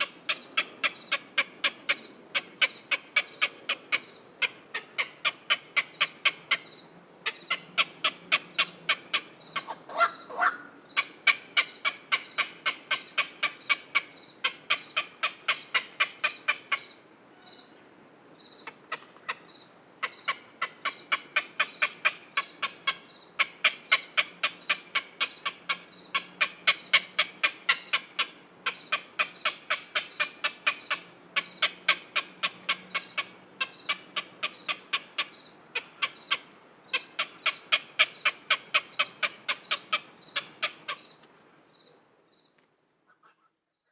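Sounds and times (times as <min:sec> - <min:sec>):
heron calling: 0:07.2 - 0:16.8.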